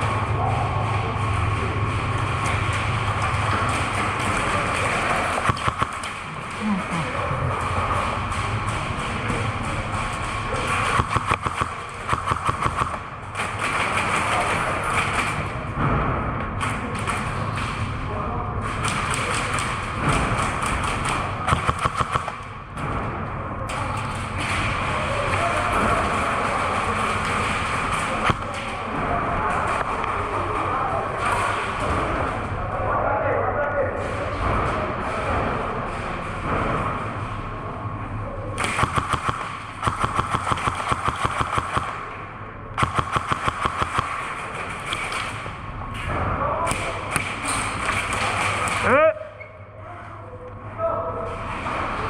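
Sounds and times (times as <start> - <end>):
steady background noise: 0.0 - 52.0
airsoft gun firing burst: 5.1 - 6.4, 10.7 - 15.4, 20.5 - 22.5, 38.6 - 42.1, 42.8 - 45.4.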